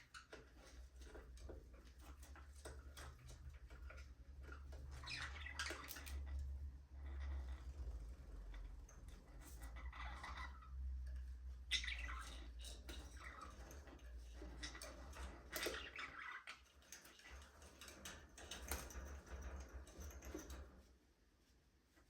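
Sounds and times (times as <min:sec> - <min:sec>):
budgerigars chirping: 0:11.6 - 0:13.5.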